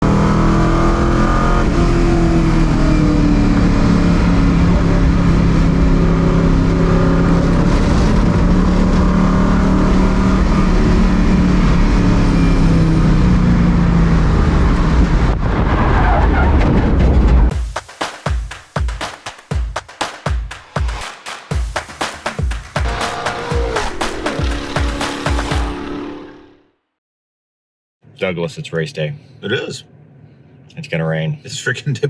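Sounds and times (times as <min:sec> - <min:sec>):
race car engine running hard: 0:00.0 - 0:15.4, 0:22.6 - 0:26.4
car noise on track: 0:00.0 - 0:17.5, 0:22.8 - 0:26.6.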